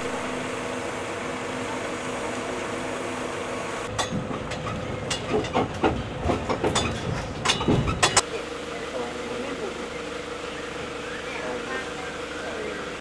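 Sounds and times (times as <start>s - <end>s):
motor hum: 0.0s - 4.0s.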